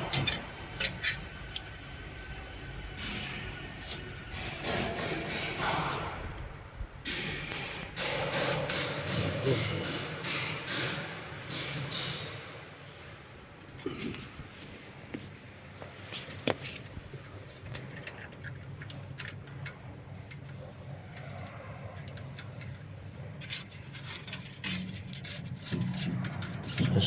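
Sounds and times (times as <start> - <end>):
clicks and knocks of wire: 0.0 - 1.7, 13.6 - 27.0
steady low hum: 0.0 - 27.0.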